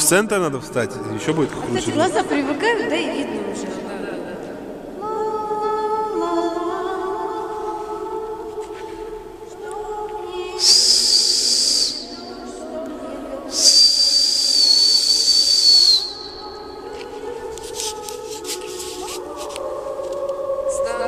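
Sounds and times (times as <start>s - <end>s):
loud high whistle blasts: 10.6s - 12.3s, 13.5s - 16.5s.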